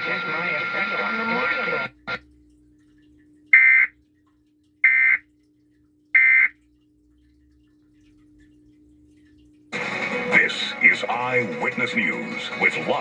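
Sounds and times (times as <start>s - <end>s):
buzzy digital data bursts: 0.0s - 1.9s
faint steady hum: 0.0s - 9.8s.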